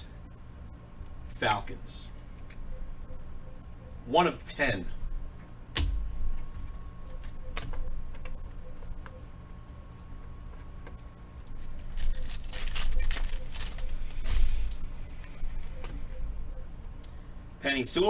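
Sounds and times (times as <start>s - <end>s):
card wrappers crinkling: 7.1s - 15.9s.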